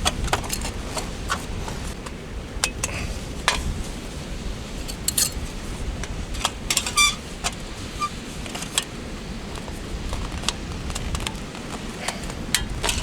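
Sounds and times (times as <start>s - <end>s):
metal grill parts clicking: 4.8s - 8.9s.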